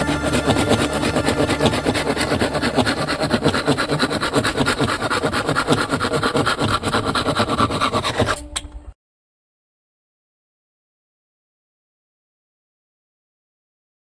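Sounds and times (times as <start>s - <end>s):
hand saw cutting wood: 0.0s - 8.4s.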